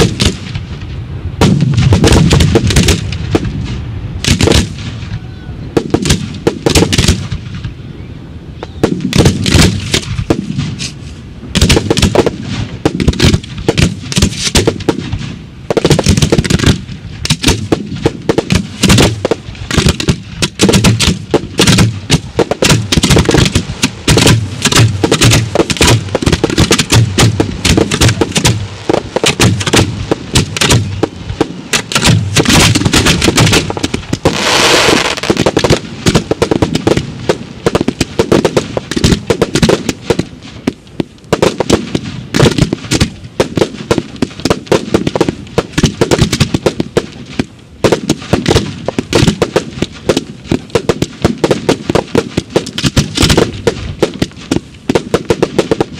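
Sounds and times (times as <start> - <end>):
fireworks bangs and crackles: 0.0 - 7.9, 8.5 - 55.9
hissing rush: 21.4 - 38.0.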